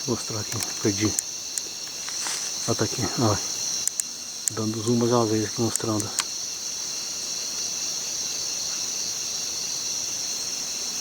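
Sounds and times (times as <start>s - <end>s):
night insect chorus: 0.0s - 11.0s.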